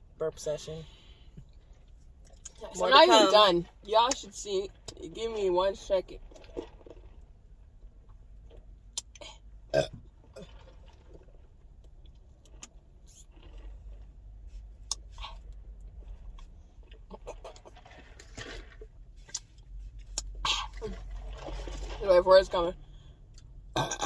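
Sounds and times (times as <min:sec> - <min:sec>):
small clicks and rustles: 0:10.5 - 0:22.0.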